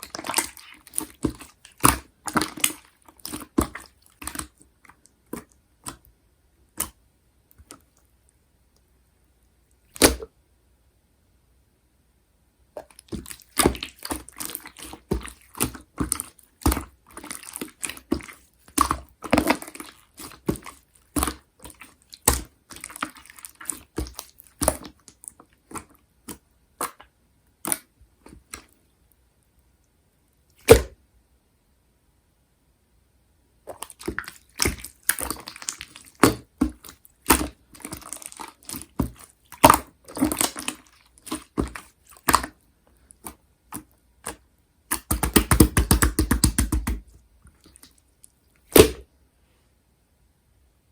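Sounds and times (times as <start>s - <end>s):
slime crackling and popping: 12.8s - 25.0s, 33.7s - 42.6s, 44.3s - 47.1s, 48.7s - 49.0s.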